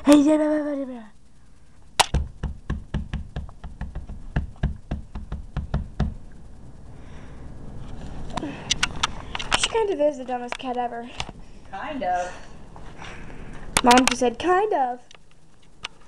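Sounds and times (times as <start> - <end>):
rapid sharp knocks and taps: 2.0 - 6.2.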